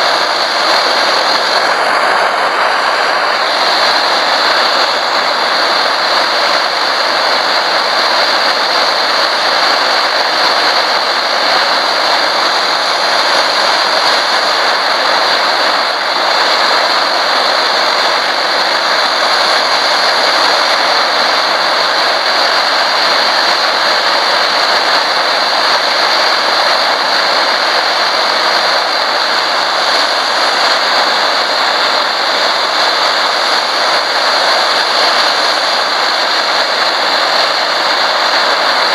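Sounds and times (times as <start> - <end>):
stove burning with rushing roar: 0.0 - 38.9.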